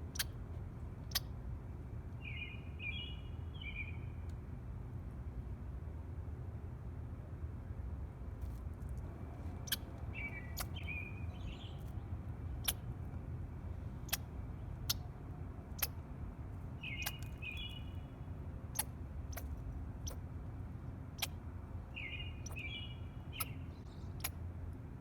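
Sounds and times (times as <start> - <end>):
squirrel chirping: 0.0 - 0.4, 1.0 - 1.3, 9.1 - 13.0, 14.0 - 16.1, 16.8 - 18.1, 18.7 - 20.2, 21.2 - 24.4.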